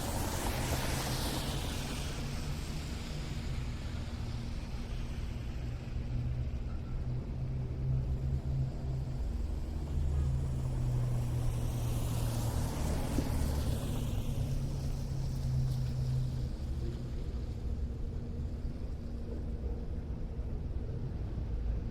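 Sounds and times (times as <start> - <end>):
passing vehicle tyre hiss: 0.0 - 5.6, 8.5 - 18.1
traffic engines rumbling: 0.0 - 21.9.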